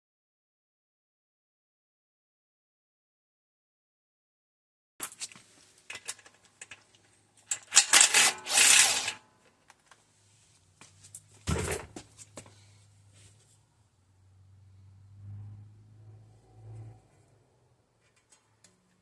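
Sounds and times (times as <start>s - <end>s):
metal tools clicking and knocking: 5.0s - 9.2s.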